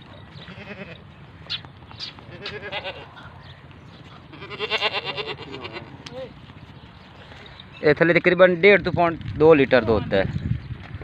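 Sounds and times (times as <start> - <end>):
goat bleating: 0.4 - 1.1, 2.0 - 3.3, 4.2 - 6.1.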